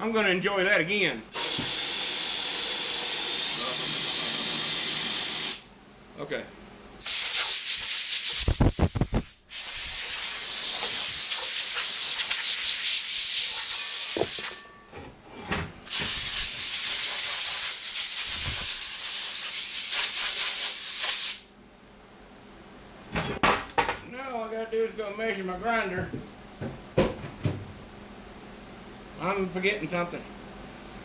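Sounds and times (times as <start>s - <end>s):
air blow gun hissing: 1.4s - 5.7s, 7.0s - 14.5s, 15.9s - 21.5s.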